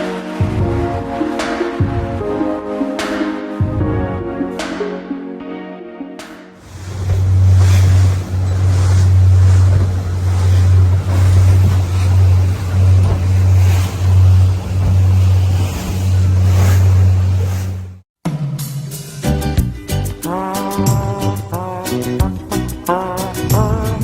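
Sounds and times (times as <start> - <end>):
boat motor humming: 6.6 - 18.0
rush of wind and water: 6.6 - 18.0.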